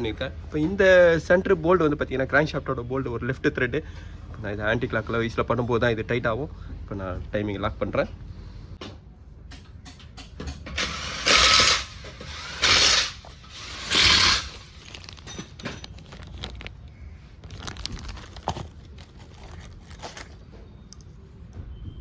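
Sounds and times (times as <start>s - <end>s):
impact wrench bursts: 10.5s - 15.1s.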